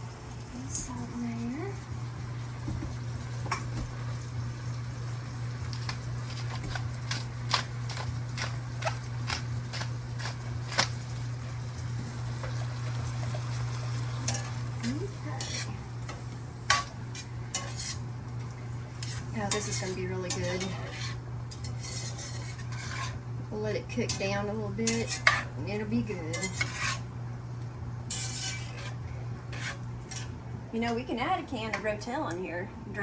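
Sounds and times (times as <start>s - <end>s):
vegetables sizzling in a pan: 0.0s - 31.6s
steady low hum: 0.0s - 33.0s
utensil scraping and tapping pan: 16.7s - 18.0s, 19.0s - 23.2s, 24.1s - 25.5s, 26.3s - 27.0s, 28.1s - 30.3s.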